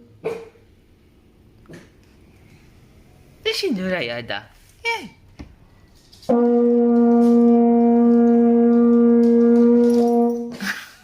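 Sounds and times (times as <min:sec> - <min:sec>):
long horn-like note: 0:06.3 - 0:10.6.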